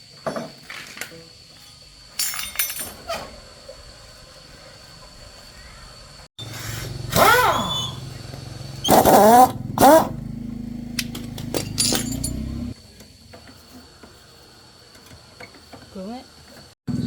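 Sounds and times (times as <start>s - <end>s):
motorcycle engine revving: 6.4s - 12.8s.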